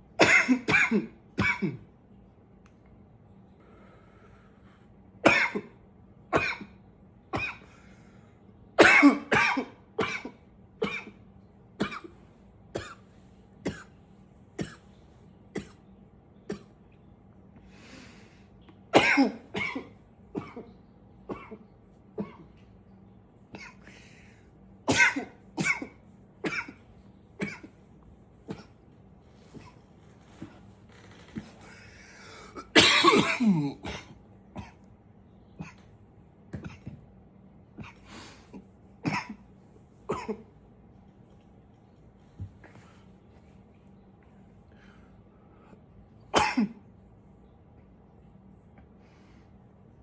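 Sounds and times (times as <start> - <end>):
man coughing: 0.2 - 1.9, 5.3 - 5.7, 8.8 - 11.1, 19.0 - 20.7, 24.9 - 26.8, 32.4 - 34.9, 37.8 - 39.4, 40.1 - 40.5, 46.4 - 46.8.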